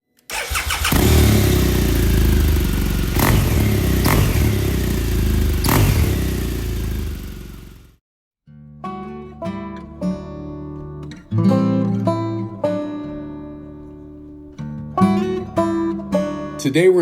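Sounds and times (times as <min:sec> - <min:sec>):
engine blips: 0:00.3 - 0:07.9
motorcycle engine running: 0:00.4 - 0:08.0.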